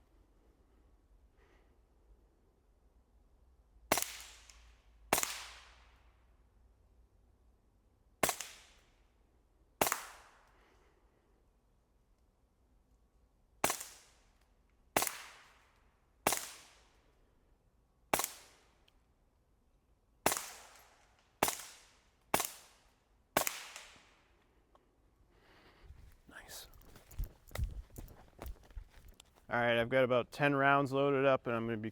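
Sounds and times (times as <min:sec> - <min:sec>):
suppressed rifle shots: 0:20.2 - 0:22.7, 0:23.4 - 0:24.1.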